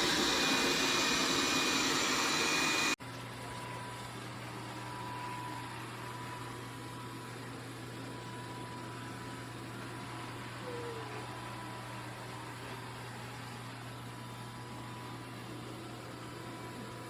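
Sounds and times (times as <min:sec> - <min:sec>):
robot vacuum humming: 0:00.0 - 0:03.0.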